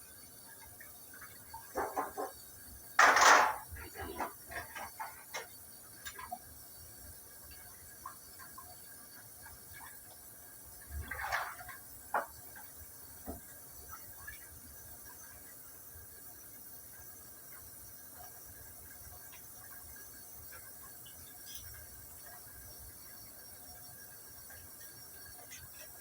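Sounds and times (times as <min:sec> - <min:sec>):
objects clicking and knocking: 0:01.7 - 0:02.4, 0:03.0 - 0:06.3.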